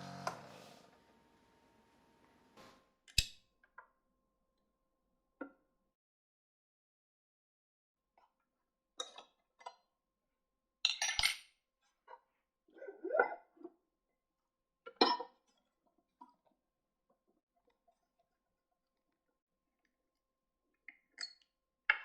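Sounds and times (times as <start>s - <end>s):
short scrape: 0.0s - 1.7s.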